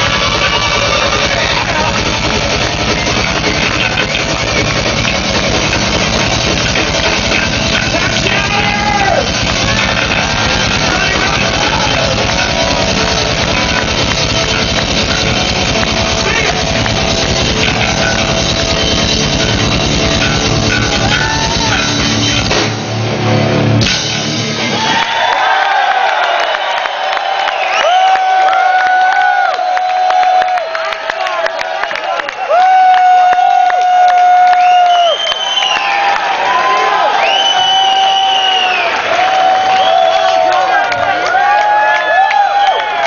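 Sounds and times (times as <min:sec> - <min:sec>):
electric guitar sliding in pitch: 0:00.0 - 0:24.8
drum kit: 0:00.0 - 0:30.6
crowd cheering and whistling: 0:00.0 - 0:43.0.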